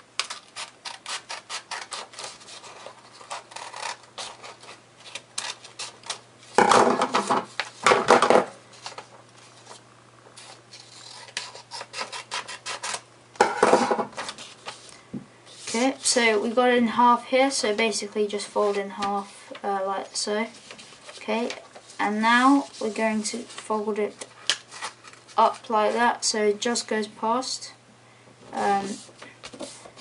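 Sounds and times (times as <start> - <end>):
paper being folded and rubbed: 0.3 - 6.1, 14.2 - 14.9, 15.5 - 16.3, 20.5 - 23.9.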